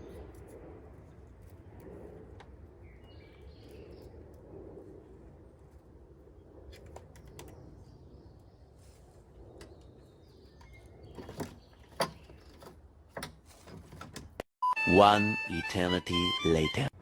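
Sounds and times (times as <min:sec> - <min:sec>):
low background rumble: 0:00.0 - 0:13.7
loose items clicking and knocking: 0:11.2 - 0:14.4.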